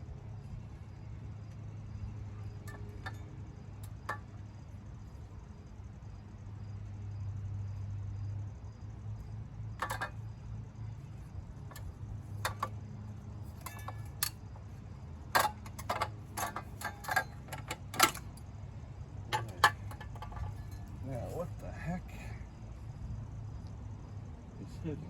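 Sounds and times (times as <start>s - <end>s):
steady low hum: 0.0s - 25.0s
metallic clicks of hand tools: 2.6s - 3.2s, 9.8s - 10.2s, 11.7s - 12.8s, 13.5s - 14.4s, 15.3s - 18.4s, 19.3s - 20.9s.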